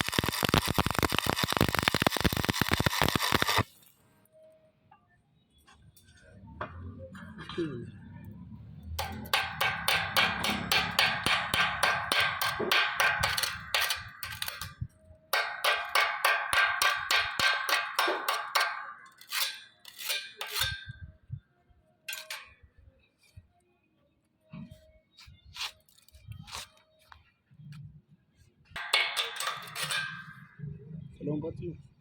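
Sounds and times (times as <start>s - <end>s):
metal-on-metal strikes ringing: 9.0s - 14.8s, 28.8s - 30.8s.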